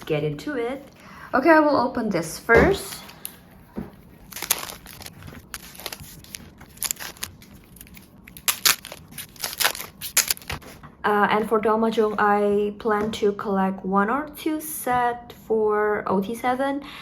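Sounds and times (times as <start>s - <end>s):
plastic packaging crinkling and tearing: 4.1s - 10.6s.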